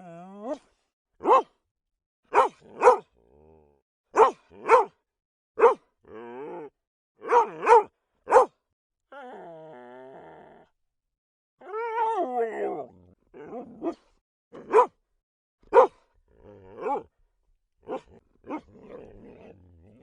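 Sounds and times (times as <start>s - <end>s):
dog barking: 1.2s - 1.6s, 2.3s - 3.1s, 4.1s - 5.0s, 5.6s - 5.9s, 7.2s - 8.6s, 13.4s - 15.0s, 15.6s - 16.0s, 16.7s - 17.1s, 17.8s - 18.7s.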